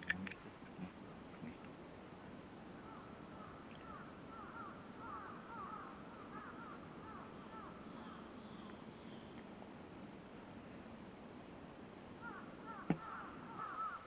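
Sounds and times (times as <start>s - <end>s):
birds calling: 2.6s - 9.5s, 12.2s - 14.0s.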